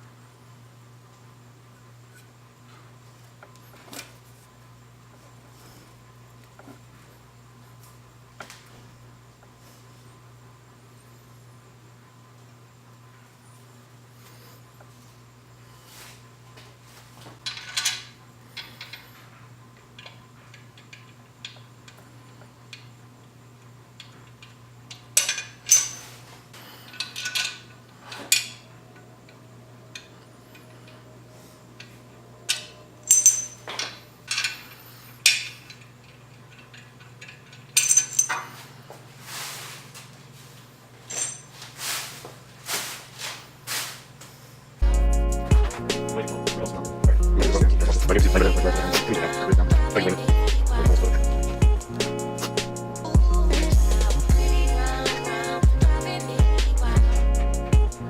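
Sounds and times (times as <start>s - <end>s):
steady low hum: 0.0s - 17.4s, 18.1s - 58.0s
metal tools clinking: 17.4s - 19.2s, 25.2s - 28.7s, 32.5s - 38.8s, 41.0s - 42.1s.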